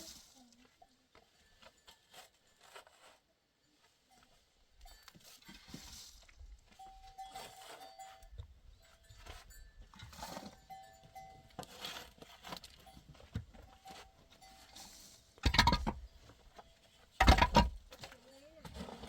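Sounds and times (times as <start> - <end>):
livestock bells ringing: 6.7 - 12.0, 12.8 - 15.1.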